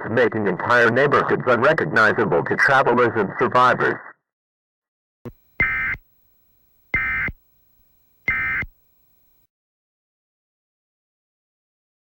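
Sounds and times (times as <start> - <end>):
digital data tone bursts: 5.3 - 9.4.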